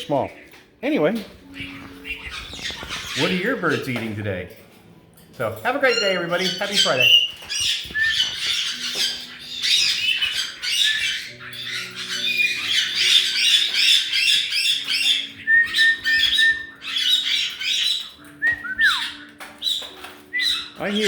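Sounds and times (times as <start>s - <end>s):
parrots squawking and chattering: 0.0s - 21.0s
parrot whistles: 6.8s - 20.8s.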